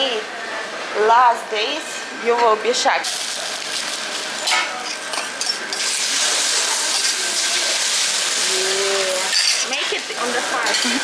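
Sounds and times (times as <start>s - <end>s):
omelette sizzling in a pan: 5.7s - 11.0s.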